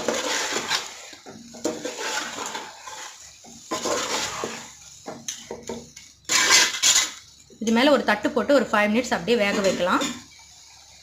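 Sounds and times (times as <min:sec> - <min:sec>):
spoon stirring and scraping pot: 0:00.0 - 0:08.0, 0:09.1 - 0:11.0.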